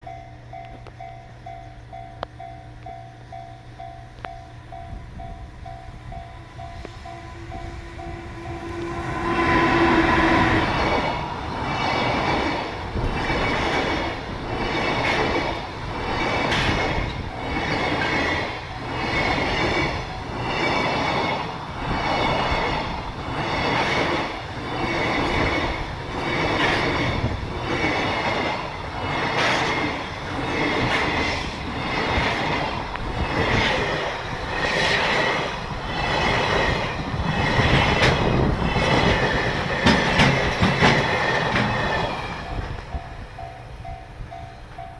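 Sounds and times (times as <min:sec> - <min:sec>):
steady high ringing tone: 0:00.0 - 0:38.0
freight train passing: 0:00.0 - 0:44.9
wheels clattering over rails: 0:07.3 - 0:43.0.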